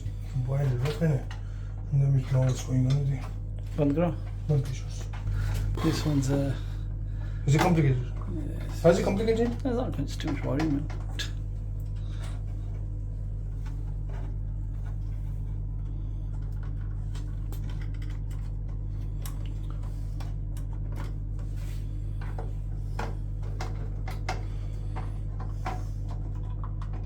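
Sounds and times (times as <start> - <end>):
steady low hum: 0.0 - 27.0
faint small clicks and taps: 16.3 - 21.5.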